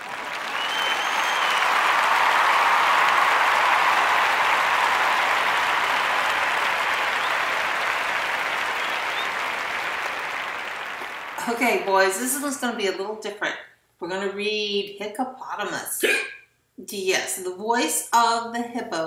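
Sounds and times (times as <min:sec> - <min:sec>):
crowd applauding: 0:00.0 - 0:12.2.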